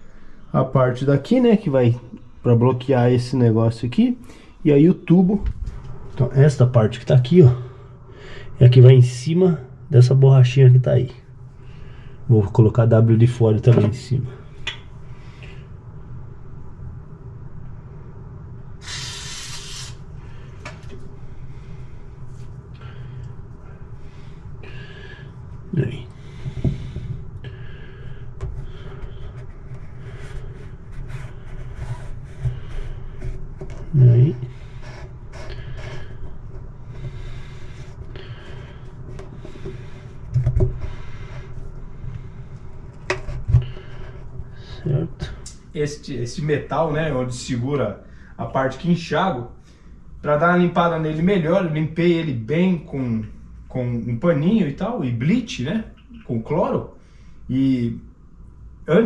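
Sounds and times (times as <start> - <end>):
steady low hum: 0.0 - 59.0
hissing noise: 18.8 - 20.1.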